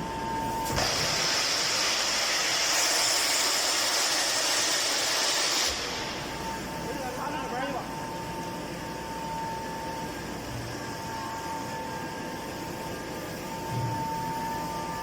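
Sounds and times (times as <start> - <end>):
high machine whine: 0.0 - 15.0
loud machinery air hiss: 0.6 - 6.4.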